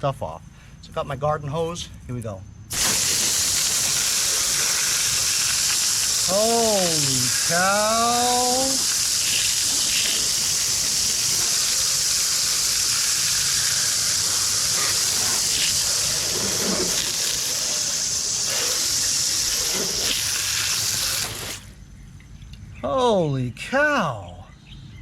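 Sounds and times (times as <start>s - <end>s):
garden hose spraying water: 2.7s - 21.8s.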